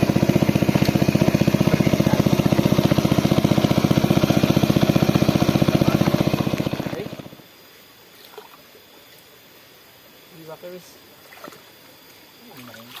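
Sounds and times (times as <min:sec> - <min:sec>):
small pump engine running: 0:00.0 - 0:07.6.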